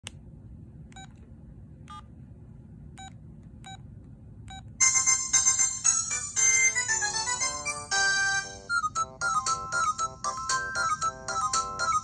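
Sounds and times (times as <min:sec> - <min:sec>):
ringtone melody: 0:04.8 - 0:12.0.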